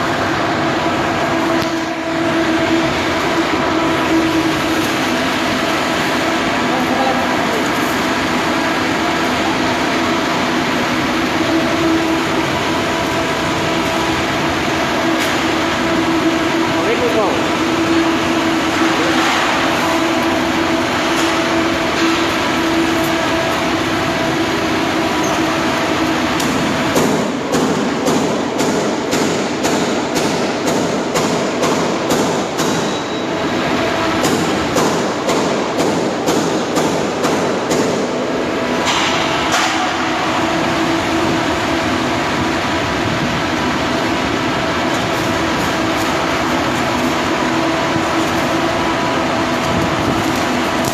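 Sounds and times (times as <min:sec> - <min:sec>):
loud machine noise: 0:00.0 - 0:50.9
arc welding crackling hiss: 0:40.5 - 0:50.9.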